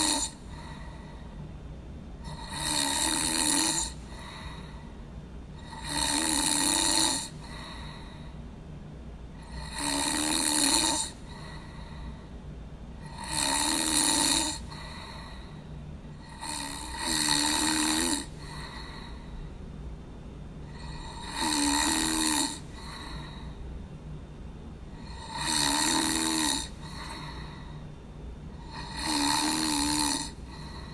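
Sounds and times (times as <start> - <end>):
person snoring: 0.0 - 1.3, 2.2 - 4.8, 5.6 - 8.4, 9.4 - 12.2, 13.0 - 19.4, 20.7 - 23.6, 25.0 - 27.8, 28.5 - 30.9
low steady hum: 0.0 - 30.9.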